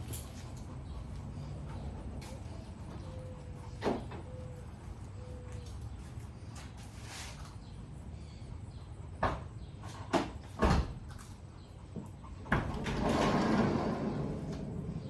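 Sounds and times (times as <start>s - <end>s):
rolling scraping noise: 12.7s - 15.0s.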